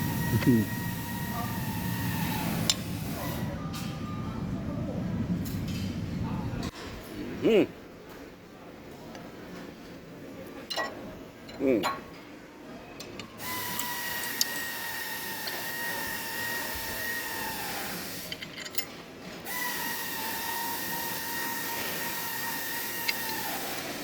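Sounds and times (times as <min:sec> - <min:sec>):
power tool motor whine: 0:00.0 - 0:03.5, 0:13.4 - 0:18.3, 0:19.5 - 0:24.0.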